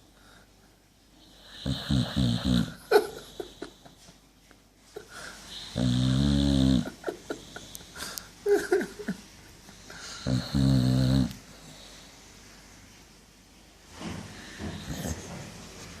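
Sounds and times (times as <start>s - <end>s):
dog snoring: 1.3s - 2.8s, 5.6s - 7.0s, 10.2s - 11.4s, 14.5s - 15.3s.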